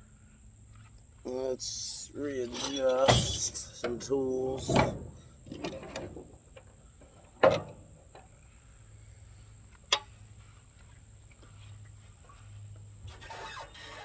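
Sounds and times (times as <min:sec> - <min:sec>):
faint handling noise: 0:02.3 - 0:07.3
hand tool clunk: 0:02.4 - 0:04.0.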